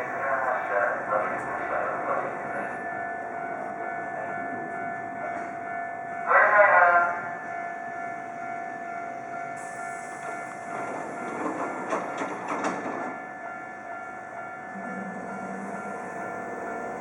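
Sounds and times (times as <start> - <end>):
steady ringing tones: 0.0 - 11.9, 13.1 - 17.0
train wheels clattering over rails: 9.6 - 13.2.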